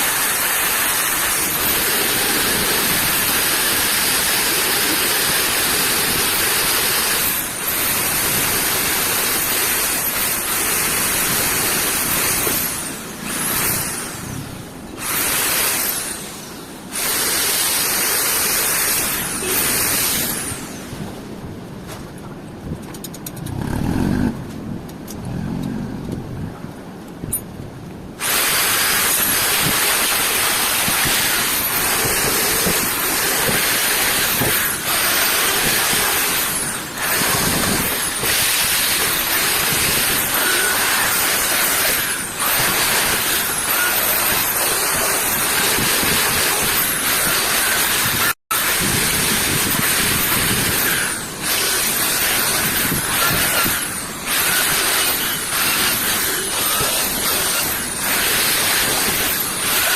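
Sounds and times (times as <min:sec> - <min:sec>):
hissing spray: 0:28.2 - 0:59.9.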